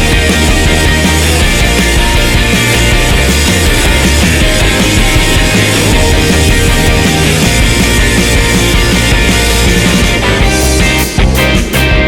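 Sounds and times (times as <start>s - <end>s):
rock music with distorted guitars: 0.0s - 12.0s.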